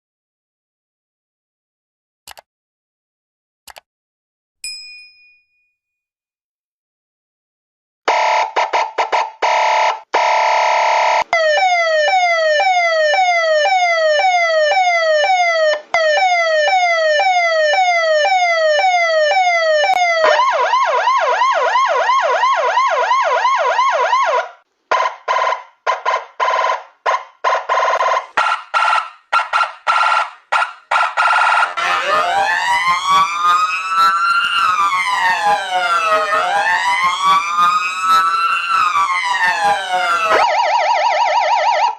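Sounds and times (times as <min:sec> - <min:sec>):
emergency vehicle sirens: 0:08.1 - 0:41.9.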